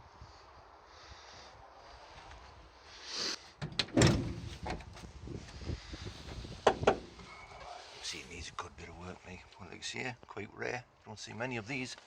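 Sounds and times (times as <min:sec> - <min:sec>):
vehicle door clicks: 0:03.6 - 0:04.9
vehicle door clunk: 0:03.6 - 0:04.9, 0:06.3 - 0:07.3.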